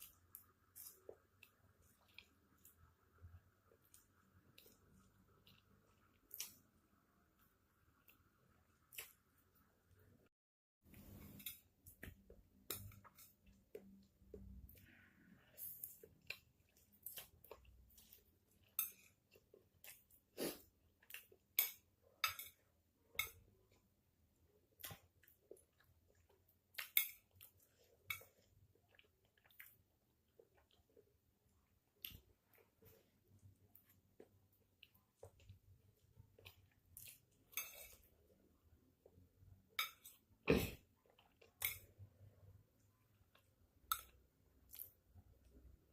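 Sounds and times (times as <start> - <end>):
person chewing noodles: 0.0 - 2.9, 8.0 - 9.3, 11.2 - 22.2, 23.1 - 38.3.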